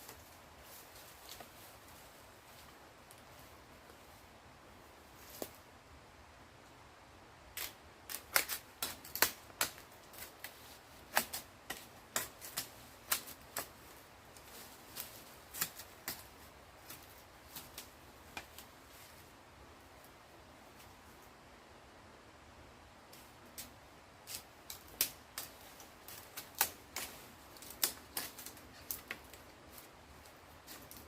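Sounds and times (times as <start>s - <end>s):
sharp irregular clicks and snaps: 7.6s - 10.4s, 24.3s - 29.8s.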